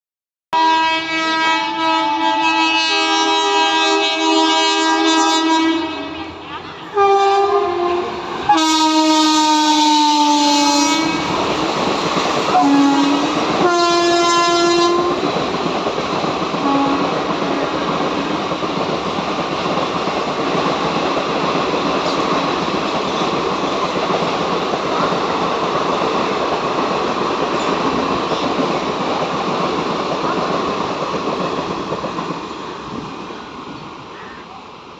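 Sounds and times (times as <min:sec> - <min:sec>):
two-tone locomotive horn: 0:00.6 - 0:11.4, 0:12.5 - 0:15.3, 0:16.6 - 0:18.4
train wheels on rails: 0:06.0 - 0:34.9.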